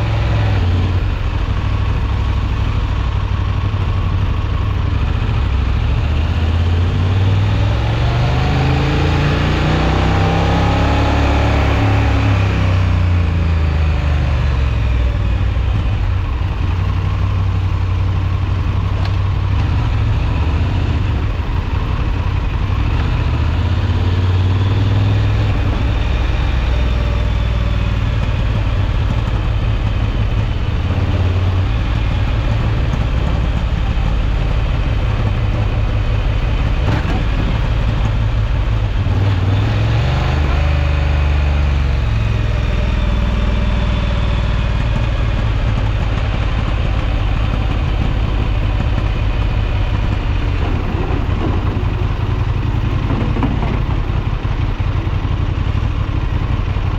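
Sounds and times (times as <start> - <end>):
motorcycle engine running: 0.0 - 56.9.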